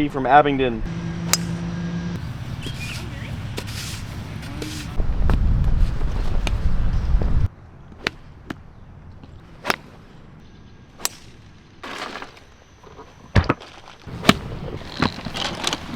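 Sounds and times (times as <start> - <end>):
golf clubs striking balls: 1.3 - 5.0, 11.0 - 11.5, 14.1 - 15.9
wind rumbling on microphone: 2.2 - 10.4.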